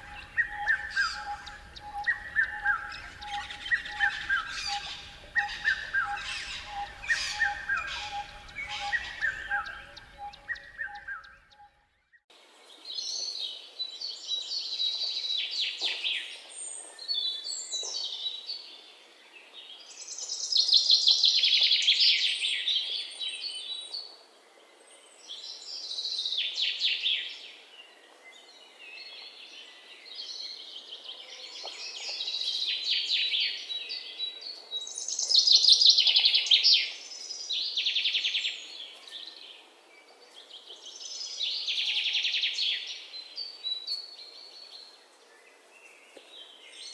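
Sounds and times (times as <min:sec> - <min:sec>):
songbirds chirping and trilling: 0:00.0 - 0:11.8.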